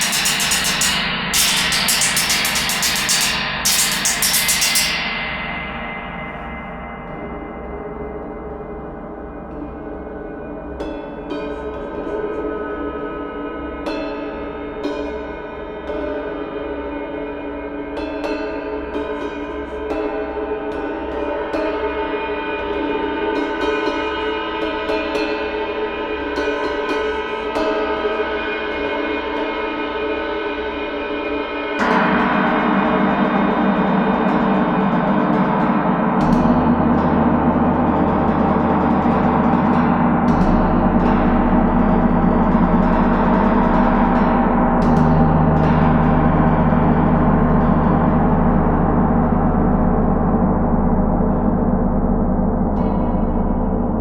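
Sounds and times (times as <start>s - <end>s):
gong ringing: 0.0s - 8.5s, 31.8s - 54.0s
deep low hum: 32.5s - 54.0s.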